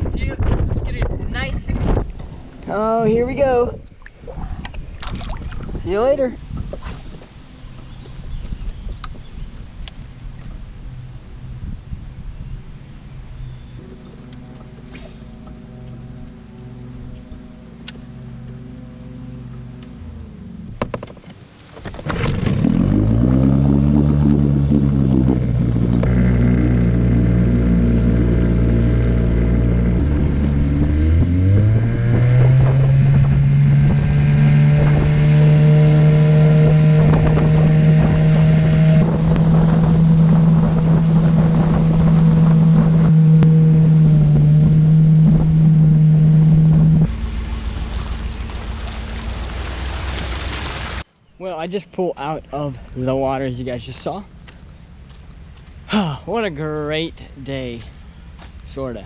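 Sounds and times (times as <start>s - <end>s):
wind noise: 0.0s - 14.1s, 21.8s - 51.0s
engine revving: 22.0s - 51.0s.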